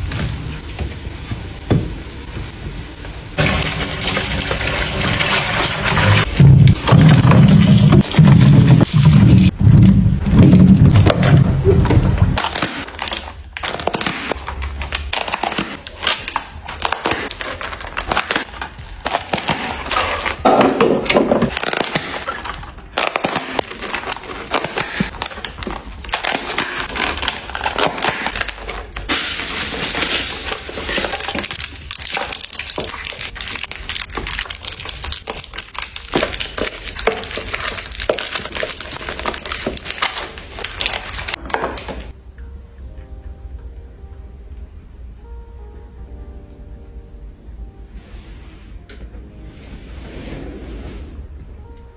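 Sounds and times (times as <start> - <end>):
food packaging crinkling: 3.4 - 9.5, 12.4 - 20.7, 21.5 - 42.1.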